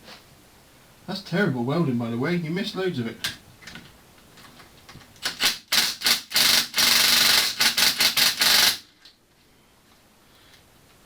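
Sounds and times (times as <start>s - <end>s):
welder crackling: 5.2s - 8.9s.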